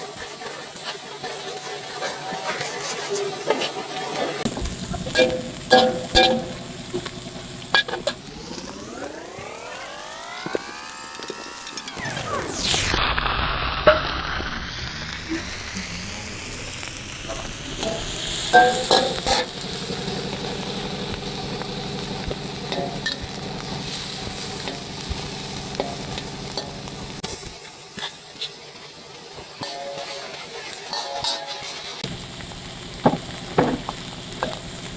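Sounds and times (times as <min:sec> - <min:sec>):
food sizzling in a pan: 0:00.0 - 0:34.9
low steady hum: 0:04.5 - 0:09.6
metal spatula scraping pan: 0:05.0 - 0:07.1, 0:17.8 - 0:19.6, 0:29.6 - 0:32.0.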